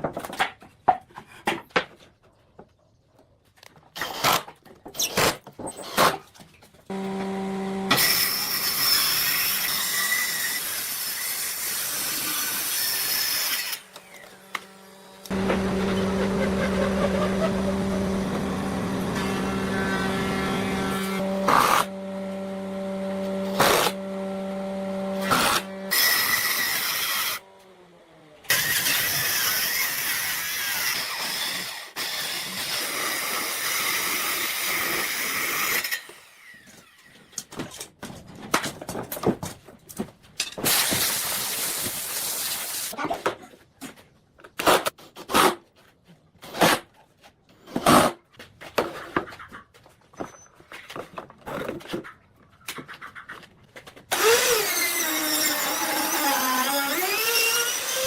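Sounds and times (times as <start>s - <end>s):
power tool motor humming: 6.9s - 8.9s, 13.8s - 27.4s
power tool cutting wood: 6.9s - 37.4s, 54.1s - 58.0s.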